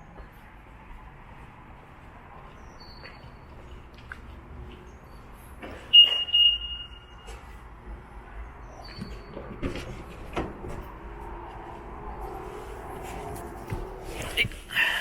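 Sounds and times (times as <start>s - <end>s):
high electronic beep: 5.9s - 7.2s.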